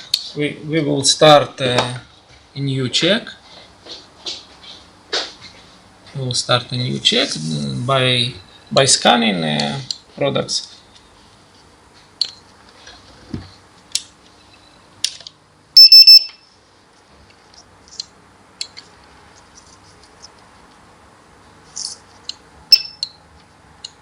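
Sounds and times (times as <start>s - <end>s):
barcode scanner beeps: 15.8s - 16.4s, 22.7s - 23.2s.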